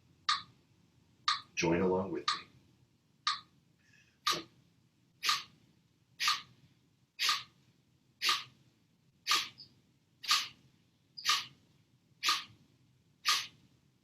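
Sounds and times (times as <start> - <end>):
forceful exhalations through the nose: 7.2 - 7.5, 13.2 - 13.6.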